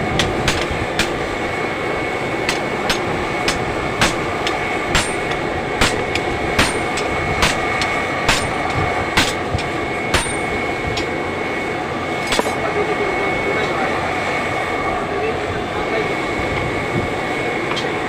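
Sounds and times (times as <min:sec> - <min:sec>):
steady rushing hum: 0:00.0 - 0:18.0
hammer striking metal: 0:00.2 - 0:01.2, 0:02.5 - 0:10.5, 0:12.2 - 0:12.6.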